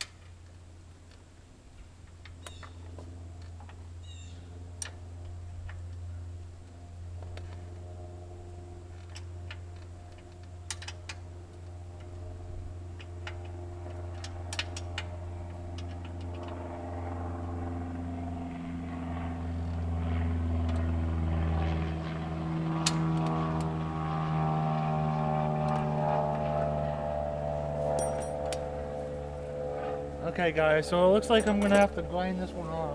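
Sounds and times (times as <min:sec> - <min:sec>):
engine drone: 0:00.0 - 0:32.9.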